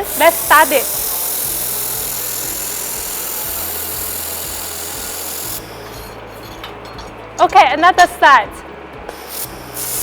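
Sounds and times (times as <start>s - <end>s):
laser welding hiss: 0.0s - 6.2s, 9.1s - 10.0s.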